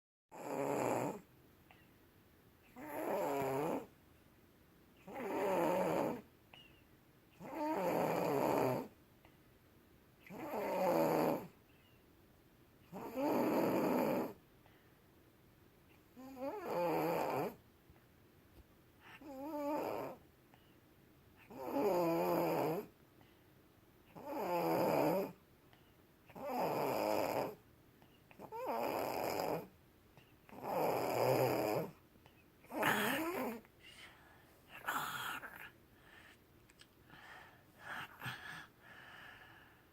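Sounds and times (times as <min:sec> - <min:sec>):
person snoring: 0:00.3 - 0:01.3, 0:02.8 - 0:03.9, 0:05.0 - 0:06.2, 0:07.4 - 0:08.9, 0:10.3 - 0:11.5, 0:12.9 - 0:14.4, 0:26.4 - 0:27.6, 0:28.4 - 0:29.7, 0:30.5 - 0:32.0, 0:32.7 - 0:35.8, 0:37.1 - 0:39.9
quiet breathing: 0:01.0 - 0:02.8, 0:06.1 - 0:07.0, 0:08.8 - 0:09.6, 0:11.4 - 0:12.1, 0:14.2 - 0:15.2, 0:18.9 - 0:19.5, 0:20.1 - 0:21.5, 0:22.9 - 0:24.2, 0:25.6 - 0:26.4, 0:27.1 - 0:28.4, 0:29.6 - 0:39.9.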